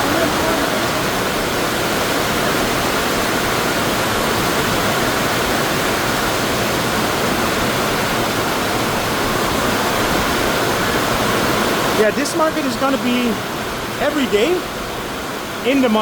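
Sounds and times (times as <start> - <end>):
heavy rain pouring: 0.0 - 16.0.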